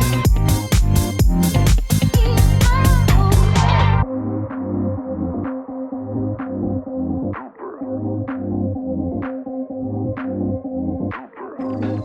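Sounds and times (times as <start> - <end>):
muffled electronic music: 0.0 - 12.0.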